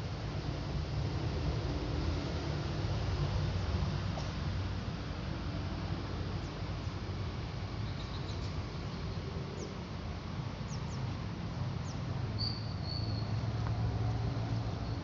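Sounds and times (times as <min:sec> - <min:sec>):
small birds chirping: 0:07.8 - 0:09.9, 0:10.6 - 0:11.2, 0:11.8 - 0:13.7
high falling bird calls: 0:11.8 - 0:13.4.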